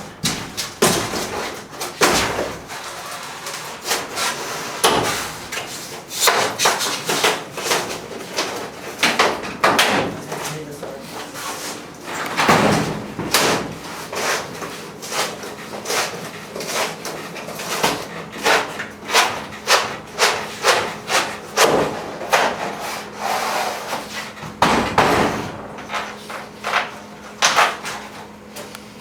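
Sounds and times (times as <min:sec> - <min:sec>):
rubbing and scraping: 0:05.6 - 0:07.9.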